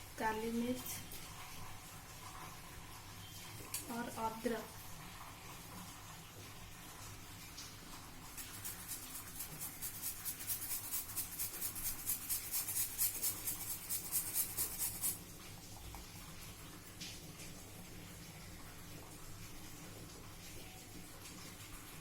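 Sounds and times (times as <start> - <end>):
ginger being grated: 8.4 - 15.2.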